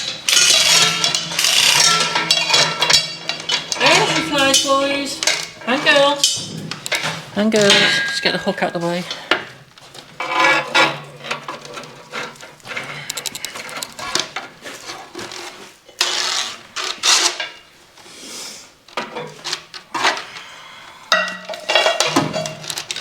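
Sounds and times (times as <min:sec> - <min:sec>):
metal mechanism clicking: 0:13.0 - 0:14.2.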